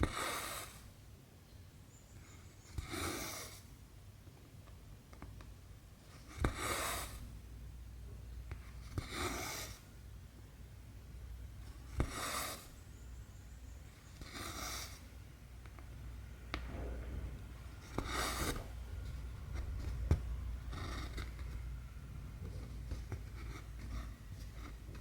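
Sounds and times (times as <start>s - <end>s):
thread rasping through fabric: 17.6s - 21.8s.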